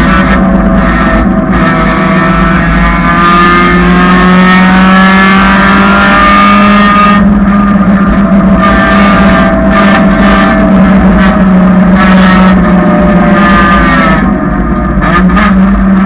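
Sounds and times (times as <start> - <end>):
car engine running under load: 0.0 - 16.0.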